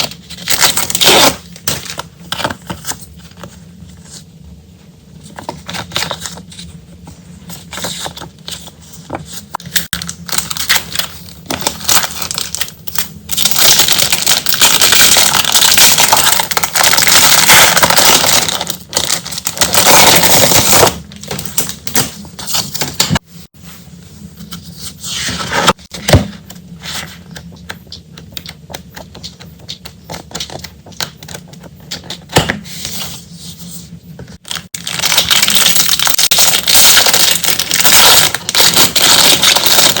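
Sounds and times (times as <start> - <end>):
packaging rustling and crinkling: 9.8 - 22.8, 34.5 - 40.0.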